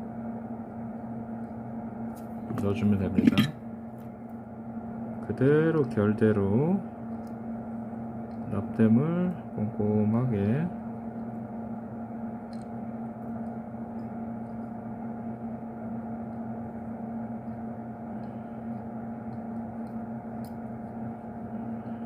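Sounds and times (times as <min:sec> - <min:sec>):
steady machine hum: 0:00.0 - 0:22.0.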